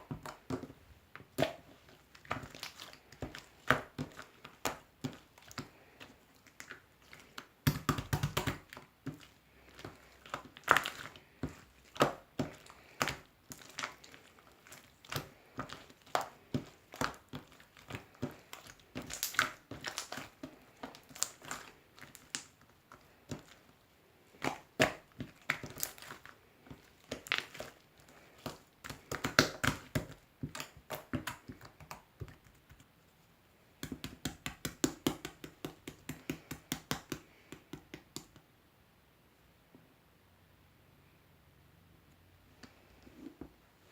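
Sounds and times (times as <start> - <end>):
slime crackling and popping: 6.4 - 23.6, 24.3 - 32.5.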